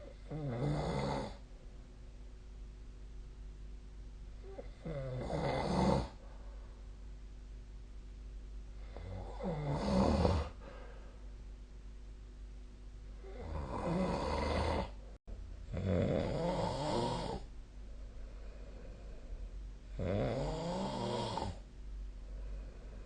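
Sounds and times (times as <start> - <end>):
person snoring: 0.0 - 1.4, 4.4 - 6.2, 8.8 - 10.9, 13.2 - 15.0, 15.7 - 17.5, 18.4 - 21.6
low steady hum: 0.0 - 23.0.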